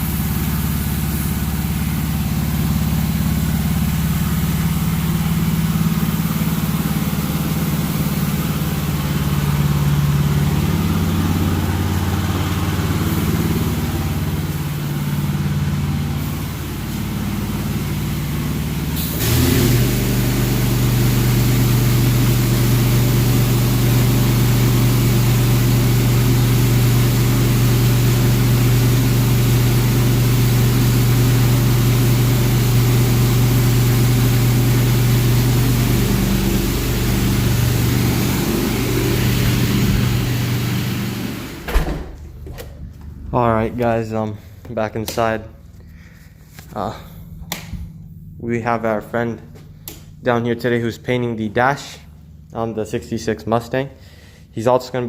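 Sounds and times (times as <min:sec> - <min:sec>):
motor droning hum: 0:31.2 - 0:44.7.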